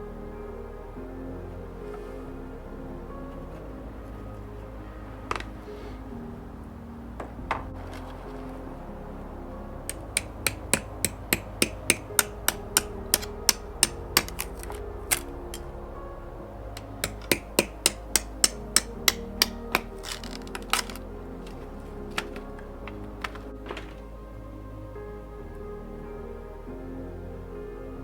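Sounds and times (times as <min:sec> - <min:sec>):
background music: 0:00.0 - 0:28.0
sharp evenly spaced knocks: 0:09.9 - 0:15.6, 0:16.8 - 0:21.0.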